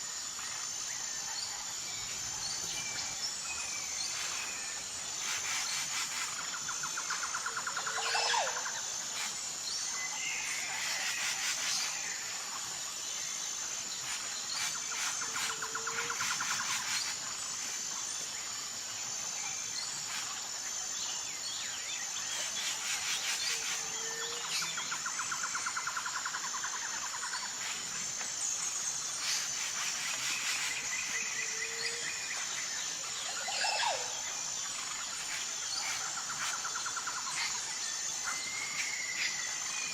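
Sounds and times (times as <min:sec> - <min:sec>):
insect chorus: 0:00.0 - 0:39.9.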